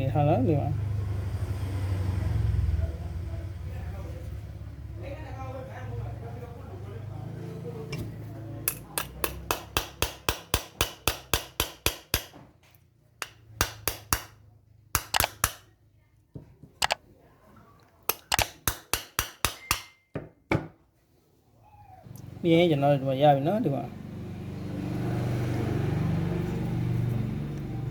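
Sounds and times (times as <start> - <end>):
light hammer tapping: 8.7 - 12.4, 13.2 - 14.4, 15.0 - 15.7, 16.4 - 17.0, 18.1 - 20.3.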